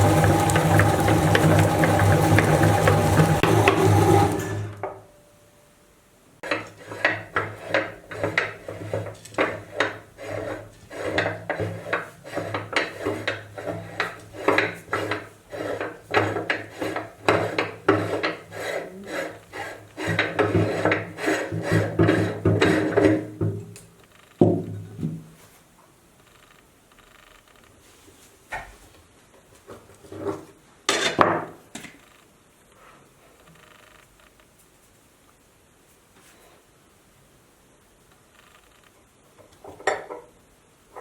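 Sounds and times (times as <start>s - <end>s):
meat grinder motor hum: 0.0s - 4.8s
rasping scraping grinding: 0.0s - 4.8s, 6.4s - 23.2s.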